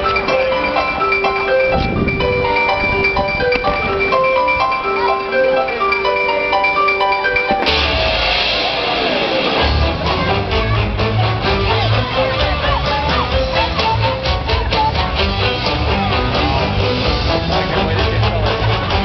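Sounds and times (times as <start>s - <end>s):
bell-like mallet melody: 0.0s - 9.7s
heavy deep bass music: 7.6s - 19.0s.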